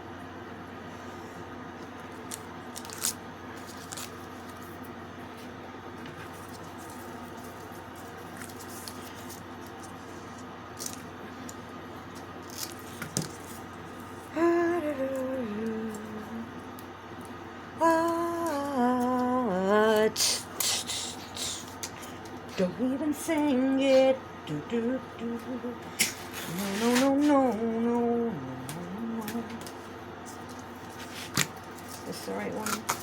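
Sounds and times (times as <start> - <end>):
steady room hum: 0.0 - 33.0
woman humming a tune: 14.3 - 16.6, 17.8 - 21.5, 22.6 - 25.8, 26.5 - 29.7.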